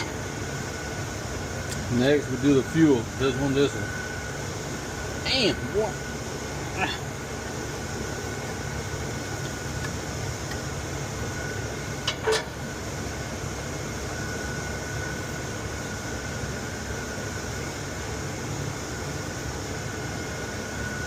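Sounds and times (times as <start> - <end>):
mechanical hum with high whine: 0.0 - 21.0.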